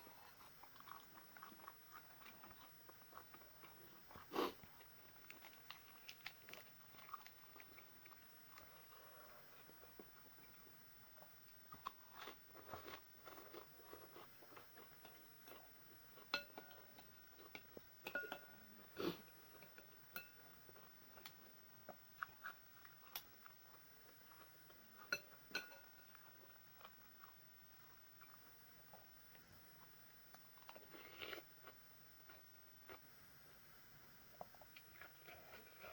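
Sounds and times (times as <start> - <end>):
person chewing noodles: 0.1 - 16.4, 26.0 - 29.0, 34.4 - 35.9
utensil clinking against bowl: 17.5 - 18.6, 25.1 - 26.0.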